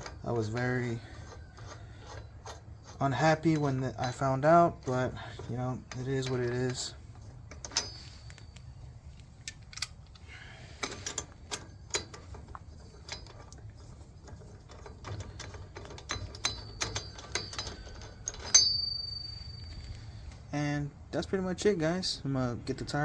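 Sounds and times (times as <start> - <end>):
metallic clicks of tools and lug nuts: 0.0 - 20.6
ringing metal clank: 7.6 - 8.8, 15.9 - 20.4.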